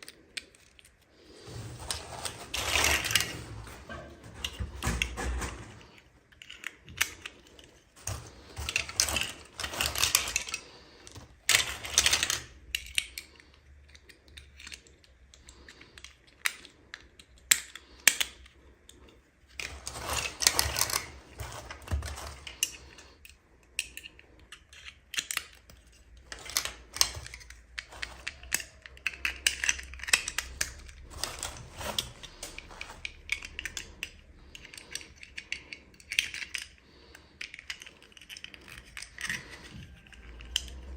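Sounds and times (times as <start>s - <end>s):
plastic pieces clicking: 0.0s - 40.9s
packaging rustling and crinkling: 1.2s - 6.6s, 19.6s - 23.1s, 26.0s - 33.9s.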